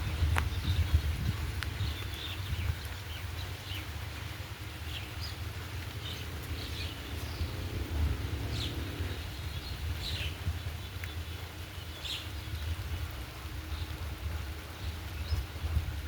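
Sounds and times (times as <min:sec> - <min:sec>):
steady low rumble: 0:00.0 - 0:11.3.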